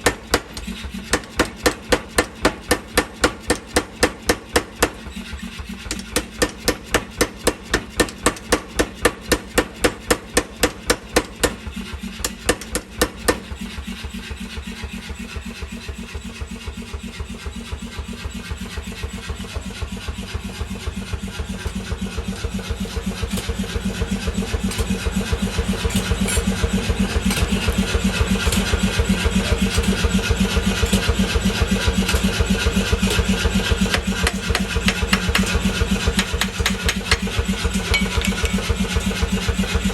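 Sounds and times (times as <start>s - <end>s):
machine running with fast pulse: 0.0s - 39.9s
forging hammer blows: 24.6s - 39.9s.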